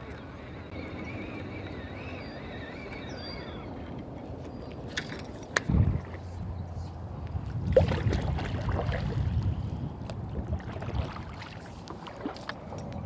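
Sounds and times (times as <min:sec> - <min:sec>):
water sloshing against hull: 0:00.0 - 0:13.0
paddle splashes: 0:07.5 - 0:09.5, 0:10.1 - 0:12.7.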